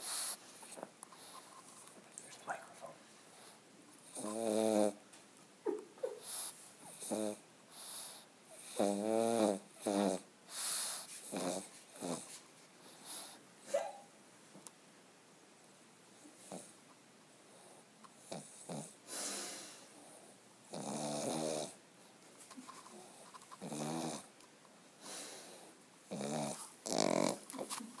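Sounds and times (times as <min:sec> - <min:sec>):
dog snoring: 0:04.0 - 0:05.0, 0:06.2 - 0:12.4, 0:16.4 - 0:16.8, 0:17.5 - 0:21.8, 0:23.0 - 0:24.3, 0:25.1 - 0:27.7.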